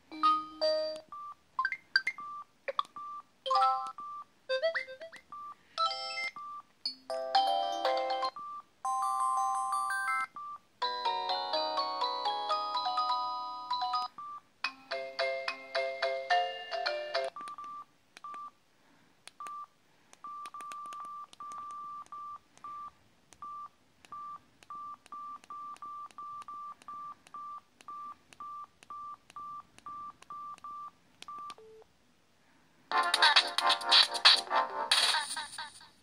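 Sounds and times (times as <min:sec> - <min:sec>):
phone melody: 0:00.1 - 0:05.2, 0:05.8 - 0:17.8
phone keypad beeps: 0:17.2 - 0:18.5, 0:19.4 - 0:31.8.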